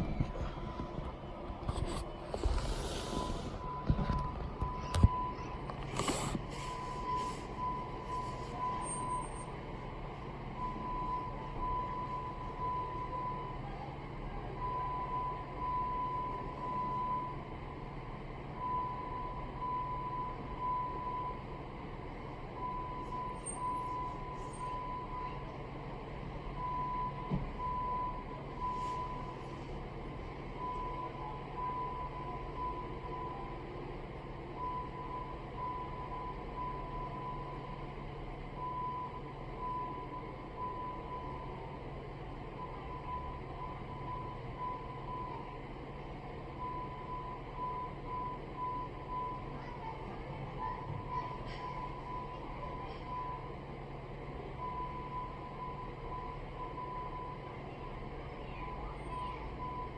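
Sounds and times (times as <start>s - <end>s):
fire alarm beeping: 6.8s - 9.5s, 54.6s - 57.5s.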